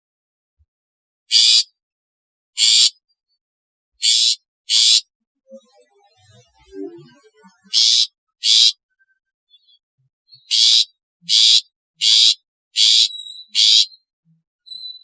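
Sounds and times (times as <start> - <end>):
bird giving harsh scratchy calls: 1.3 - 1.6, 2.6 - 3.0, 4.0 - 5.0, 7.7 - 8.7, 10.5 - 14.0.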